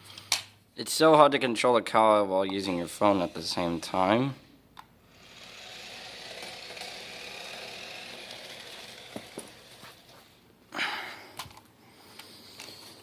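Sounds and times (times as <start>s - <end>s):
toy car electric motor whirring: 2.8s - 4.1s, 5.0s - 10.2s.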